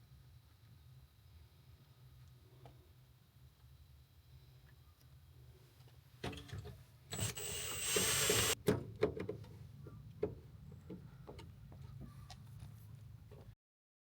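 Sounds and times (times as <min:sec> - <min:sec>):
hissing mechanical whir: 0:07.1 - 0:08.6.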